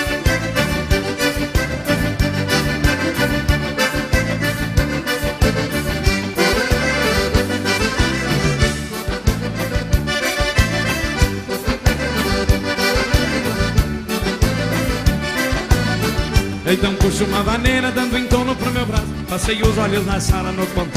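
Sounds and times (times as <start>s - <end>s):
bass line: 0.0s - 20.9s
piano accordion lead: 0.0s - 20.9s
steady drum beat: 0.0s - 20.9s.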